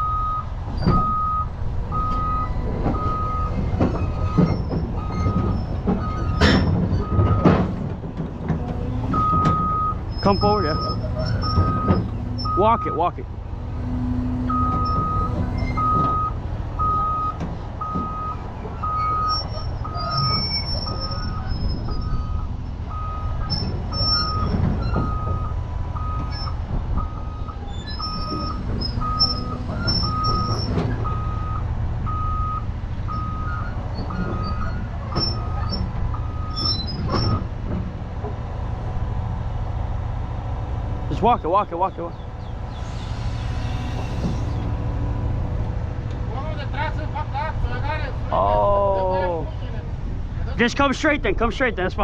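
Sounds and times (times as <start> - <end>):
travel alarm beeping: 0.0 - 3.5, 9.1 - 13.1, 14.5 - 20.3, 25.0 - 34.6
steel tracks clanking: 0.0 - 48.6
diesel engine rumble: 0.0 - 52.0.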